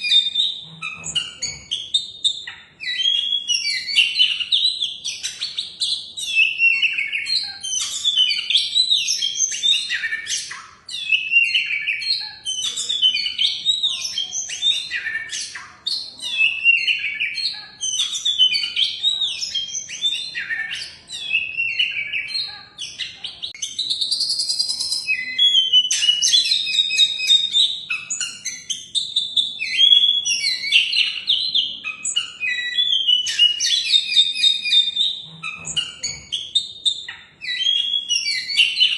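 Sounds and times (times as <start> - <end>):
bird singing whistles and chirps: 0.0 - 38.9.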